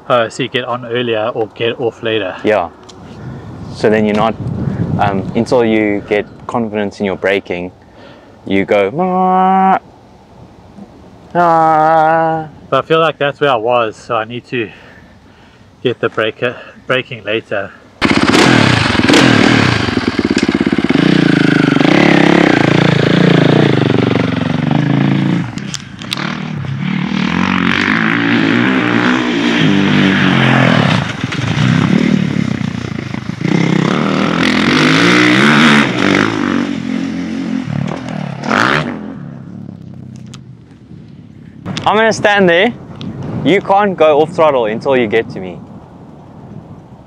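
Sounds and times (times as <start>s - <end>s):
dirt bike engine revving: 18.0s - 39.3s.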